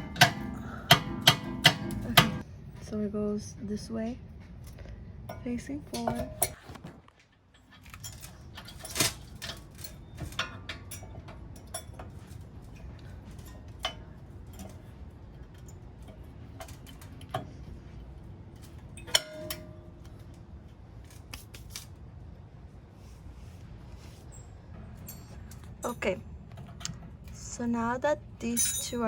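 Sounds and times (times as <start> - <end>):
metal clanks: 0.0 - 2.4, 5.3 - 6.7, 7.6 - 21.2, 28.4 - 29.0.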